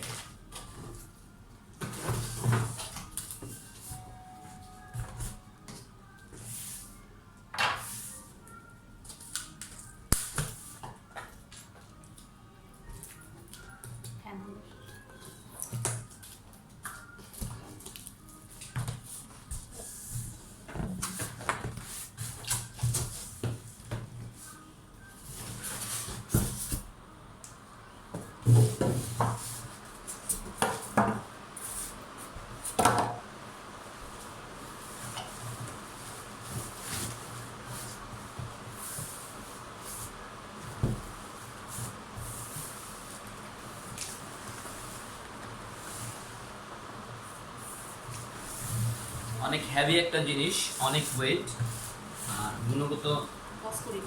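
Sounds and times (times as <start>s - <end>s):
packaging rustling and scraping: 1.8s - 3.9s.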